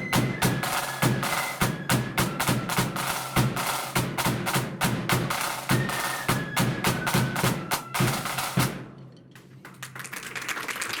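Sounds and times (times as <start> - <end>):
marching band drums: 0.0 - 9.0
quick sharp drum strikes: 0.2 - 8.9.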